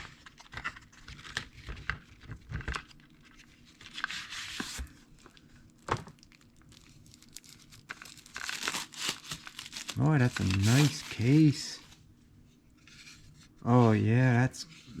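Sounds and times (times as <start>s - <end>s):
packaging crinkling: 3.8s - 12.0s.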